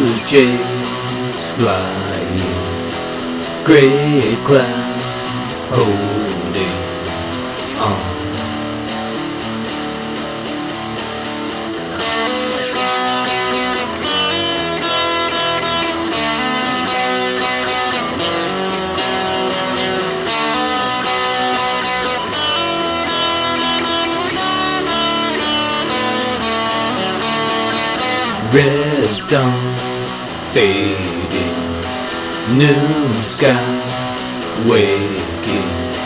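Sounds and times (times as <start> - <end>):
guitars playing: 0.0 - 8.8, 28.3 - 36.0.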